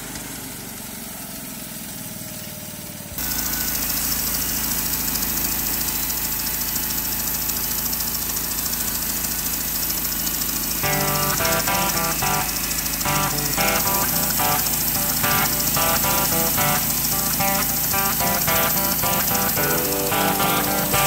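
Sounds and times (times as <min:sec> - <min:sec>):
sawmill engine running: 0:09.6 - 0:21.0.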